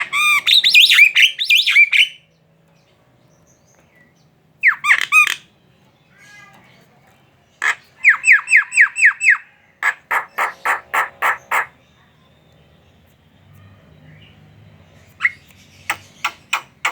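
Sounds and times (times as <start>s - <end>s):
bird chattering: 4.6s - 5.5s, 7.5s - 12.0s, 15.1s - 16.9s.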